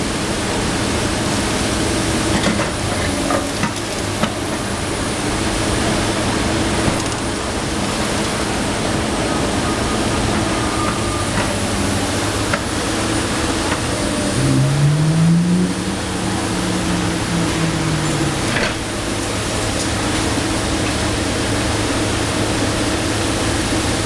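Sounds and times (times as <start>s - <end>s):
excavator diesel engine running: 0.0s - 24.0s
rising engine tone: 11.8s - 19.8s.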